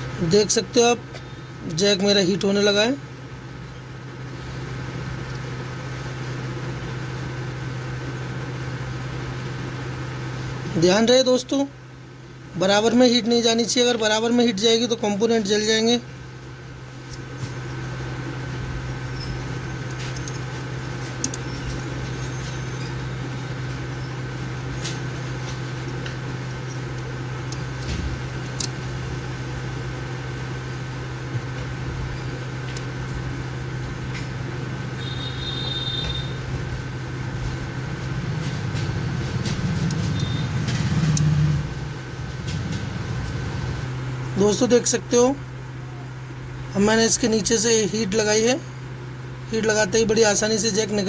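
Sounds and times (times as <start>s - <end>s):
hot-air station blowing: 0.0s - 51.0s
small clicks: 19.8s - 22.0s.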